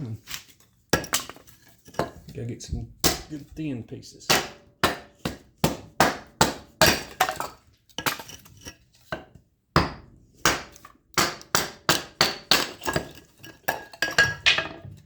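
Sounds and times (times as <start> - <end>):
axe splitting wood: 0.2 - 1.6, 3.0 - 3.6, 4.3 - 8.5, 9.8 - 15.0.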